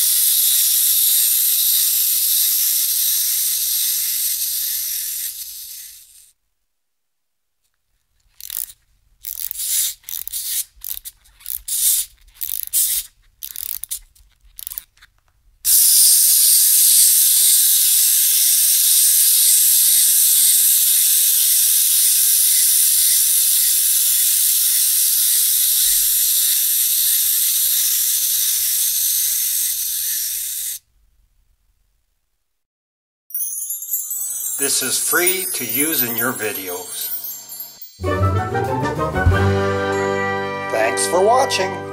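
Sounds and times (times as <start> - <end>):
wind-up key ratcheting clicks: 0.0 - 6.3, 8.2 - 30.8, 34.2 - 37.9
clockwork whirring: 0.0 - 6.4, 8.3 - 15.1, 15.7 - 30.8, 34.0 - 38.2.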